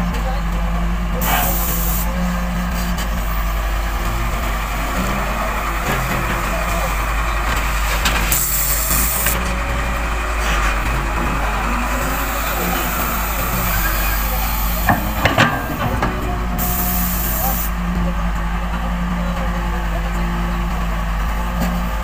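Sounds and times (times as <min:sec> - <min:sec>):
heavy diesel engines running: 0:00.0 - 0:22.0
air hiss: 0:01.2 - 0:09.4, 0:11.8 - 0:15.8, 0:16.6 - 0:17.8.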